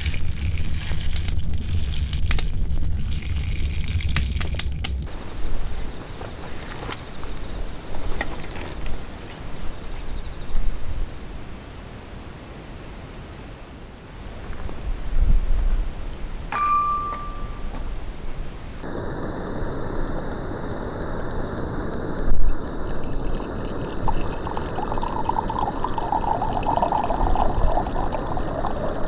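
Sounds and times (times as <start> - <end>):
crackling clicks: 0.0 - 5.1
low wind rumble: 0.0 - 11.4, 17.3 - 29.0
outdoor hiss: 0.0 - 29.0
high-pitched insect drone: 16.5 - 18.9.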